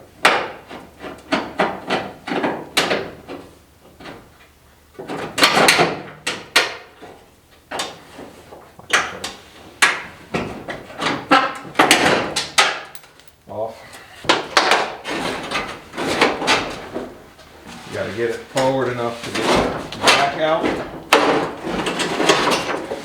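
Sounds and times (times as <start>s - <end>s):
metal parts knocking and clanking: 11.0s - 13.4s, 19.2s - 23.0s
rattling and scraping: 14.2s - 23.0s.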